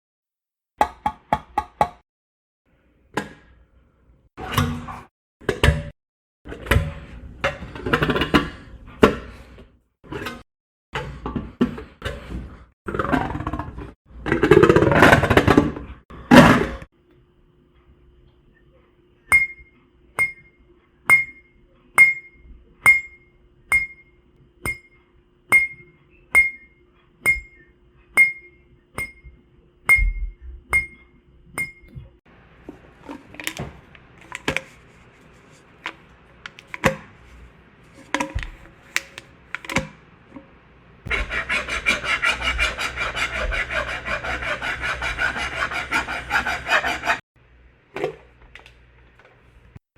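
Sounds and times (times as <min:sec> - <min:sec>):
raspy rubbing: 0:41.1 - 0:47.2.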